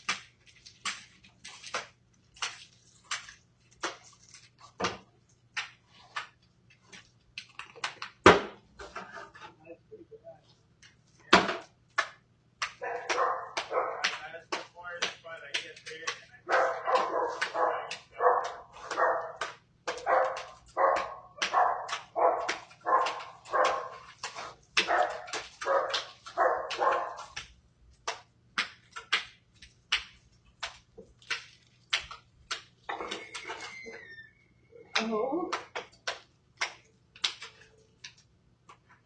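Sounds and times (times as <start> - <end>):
dog barking: 12.8 - 14.2, 16.4 - 24.2, 24.8 - 27.4.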